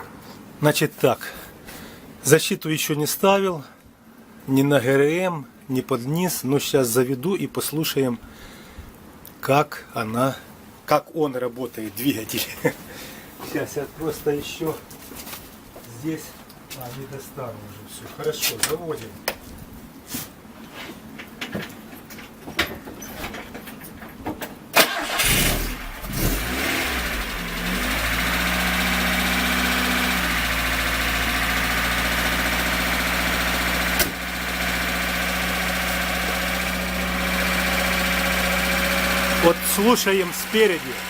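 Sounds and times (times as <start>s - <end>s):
engine cranking and starting: 24.8s - 41.0s
engine idling with valve clatter: 24.8s - 41.0s.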